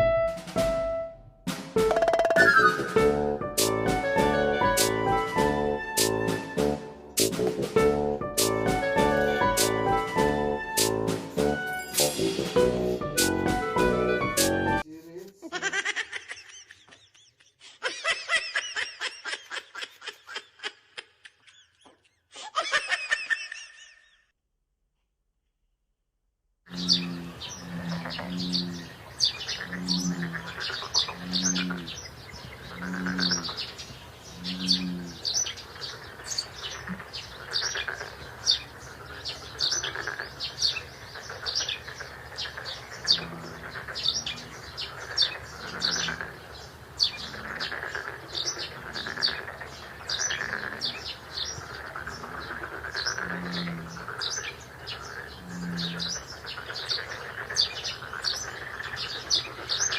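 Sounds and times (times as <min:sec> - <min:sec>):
lower pitched bird call: 0:01.8 - 0:03.3, 0:26.7 - 0:46.4, 0:47.0 - 0:59.9
birds chirping: 0:01.8 - 0:15.2, 0:15.8 - 0:22.4, 0:26.7 - 0:59.9.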